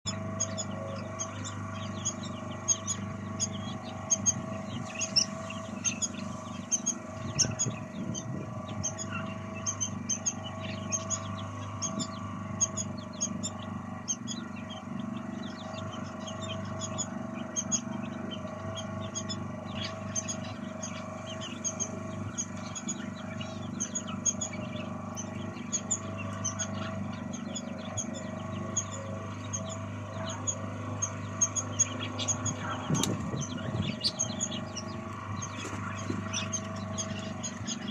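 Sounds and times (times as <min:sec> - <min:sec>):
low mechanical hum: 0:00.0 - 0:37.9
small birds chirping: 0:00.0 - 0:37.9.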